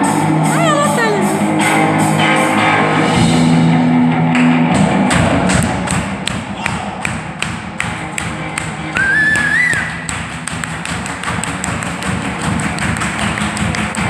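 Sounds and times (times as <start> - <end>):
worship band playing: 0.0 - 4.0
low bass notes: 0.0 - 14.0.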